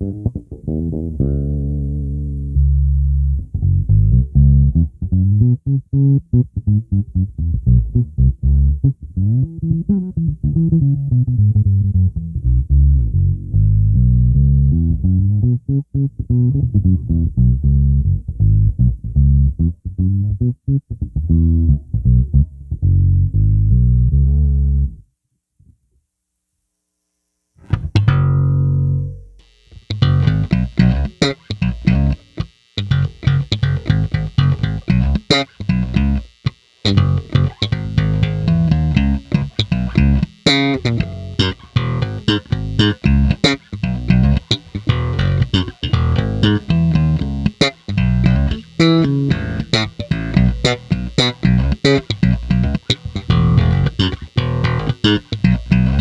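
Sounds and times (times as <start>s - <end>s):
plucked bass guitar notes: 0.0s - 25.1s, 27.6s - 56.0s.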